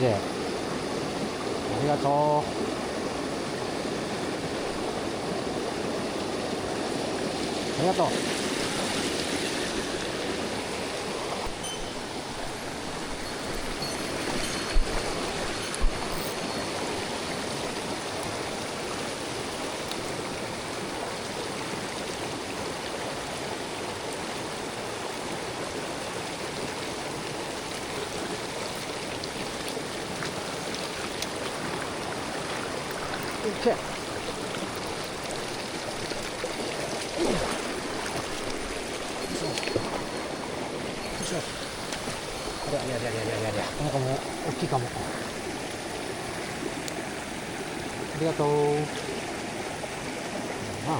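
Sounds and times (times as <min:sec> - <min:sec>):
water rushing over rocks: 0:00.0 - 0:50.9.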